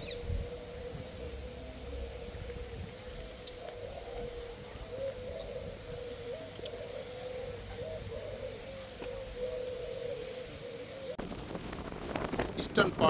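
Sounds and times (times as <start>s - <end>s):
wind and surf rumble: 0.0s - 6.2s, 10.2s - 13.0s
dove cooing: 0.0s - 11.2s.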